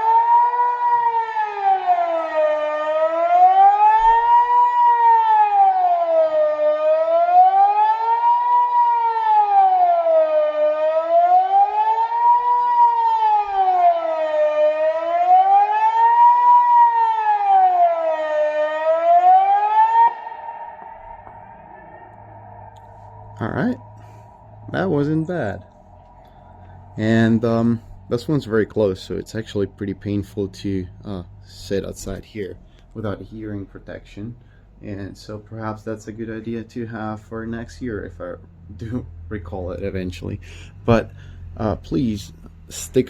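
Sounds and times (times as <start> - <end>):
siren wailing: 0.0 - 32.1.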